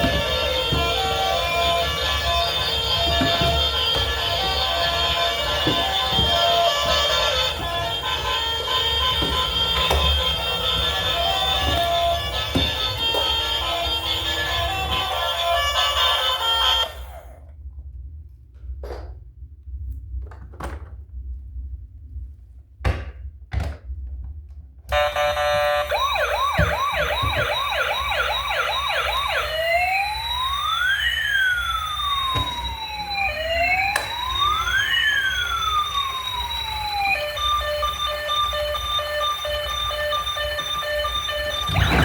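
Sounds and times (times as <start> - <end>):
toy electronic siren: 0.0 - 17.4, 24.9 - 42.0.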